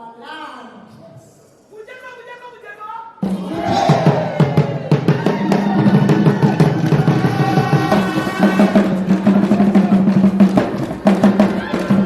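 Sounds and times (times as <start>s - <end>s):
busy drumming and percussion: 3.2s - 12.0s.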